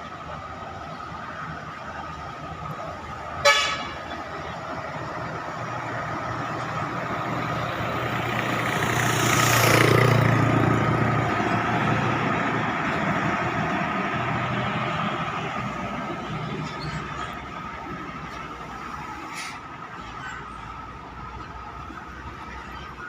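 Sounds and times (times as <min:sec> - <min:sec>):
road traffic engines: 0:00.0 - 0:23.0
vehicle passing close: 0:04.6 - 0:19.1.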